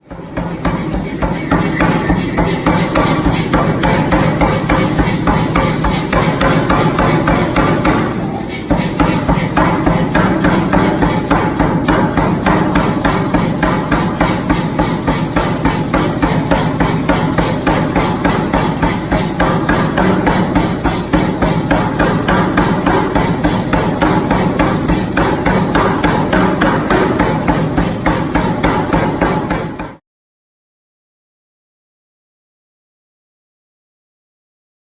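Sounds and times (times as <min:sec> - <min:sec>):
power hammer striking hot steel: 0:00.1 - 0:30.0.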